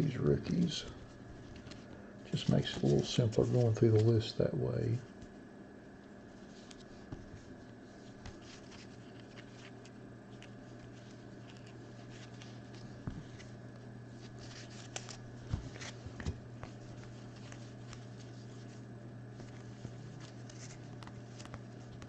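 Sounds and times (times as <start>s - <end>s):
steady low hum: 0.0s - 22.0s
cards sliding and tapping: 19.4s - 22.0s.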